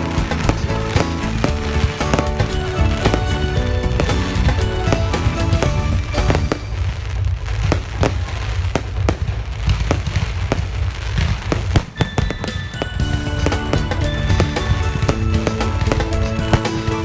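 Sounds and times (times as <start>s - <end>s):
background music: 0.0s - 7.2s, 12.0s - 17.0s
fireworks bangs: 0.0s - 17.0s.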